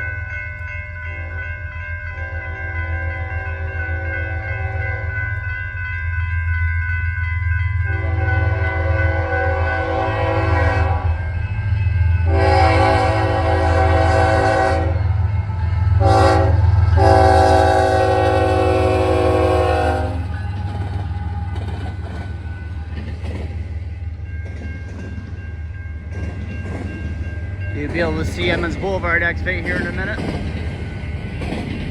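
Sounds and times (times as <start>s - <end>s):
locomotive engine rumble: 3.1s - 31.9s
locomotive air horn blasts: 7.9s - 11.2s, 12.3s - 15.0s, 16.0s - 20.3s
train wheels clicking: 17.0s - 31.9s.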